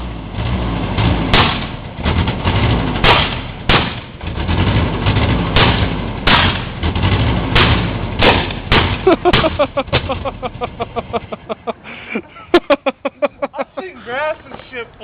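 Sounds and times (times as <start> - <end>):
truck engine running hard: 0.0 - 12.4
sharp knocks: 1.3 - 4.3, 5.0 - 10.1.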